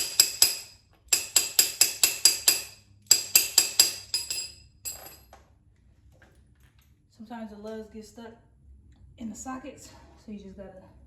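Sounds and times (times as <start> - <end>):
metal-on-metal hammer strikes: 0.0 - 5.2.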